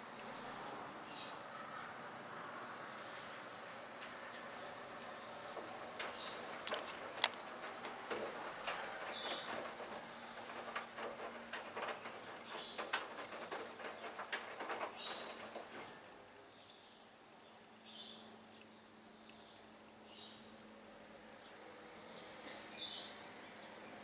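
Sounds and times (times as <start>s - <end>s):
washing machine tumbling wet load: 3.0s - 16.2s.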